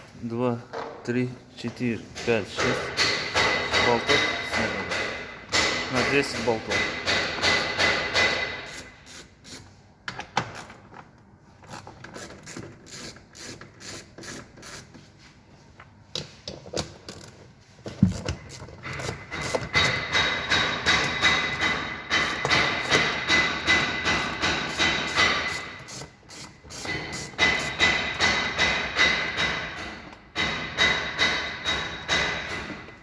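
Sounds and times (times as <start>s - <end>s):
hand tools clicking on bolts: 2.2s - 11.0s, 16.2s - 33.0s
rapid ratchet clicking: 2.9s - 9.6s, 12.1s - 14.8s, 18.4s - 32.7s.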